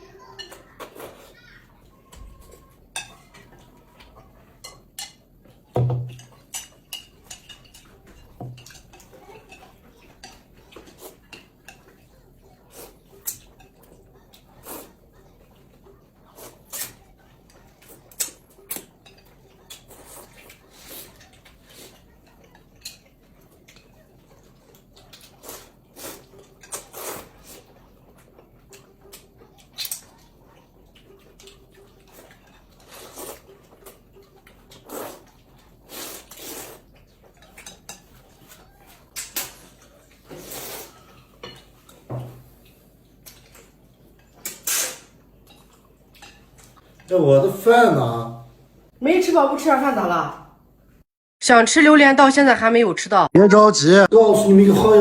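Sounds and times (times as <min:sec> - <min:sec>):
utensils clinking on plates: 0:01.8 - 0:14.6, 0:16.7 - 0:47.1.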